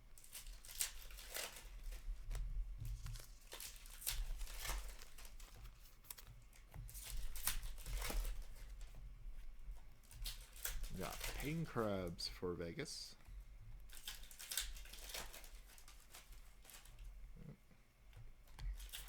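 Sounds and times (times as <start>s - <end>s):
foil wrappers crinkling and tearing: 0.0s - 9.0s, 9.6s - 12.4s, 13.8s - 17.2s, 18.6s - 19.0s
cards sliding together: 5.5s - 6.3s.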